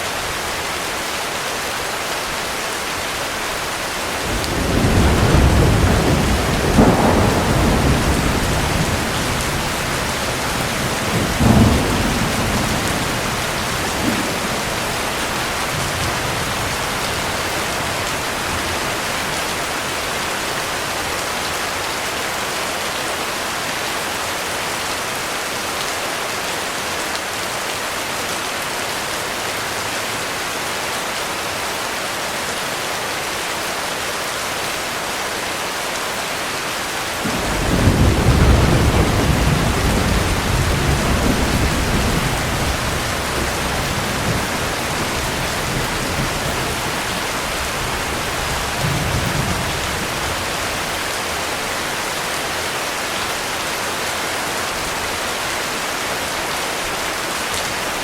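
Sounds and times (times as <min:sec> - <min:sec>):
heavy rain falling: 0:00.0 - 0:58.0
thunder rumbling: 0:04.2 - 0:20.3, 0:37.2 - 0:51.6.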